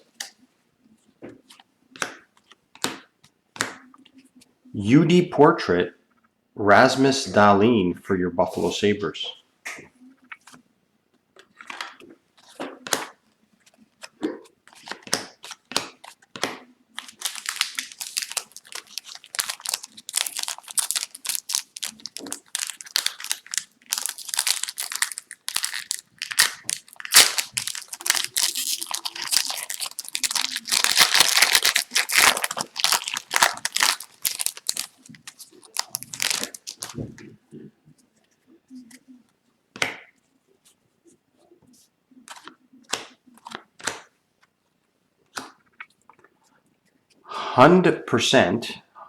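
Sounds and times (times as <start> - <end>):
plastic wrapper crinkling and tearing: 16.9 - 37.0.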